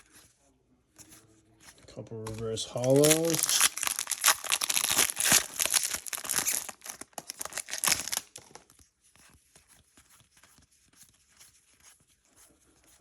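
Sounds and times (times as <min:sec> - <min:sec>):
foil wrapper crinkling and tearing: 0:02.3 - 0:08.7.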